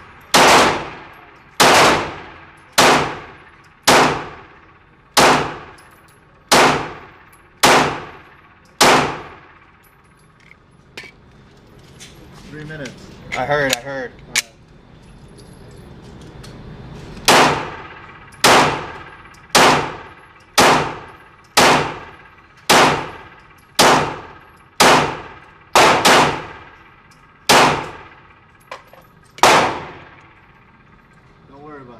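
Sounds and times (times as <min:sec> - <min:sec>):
pistol shots echoing: 0:00.3 - 0:05.8, 0:06.5 - 0:09.8, 0:17.3 - 0:28.4, 0:29.4 - 0:30.4.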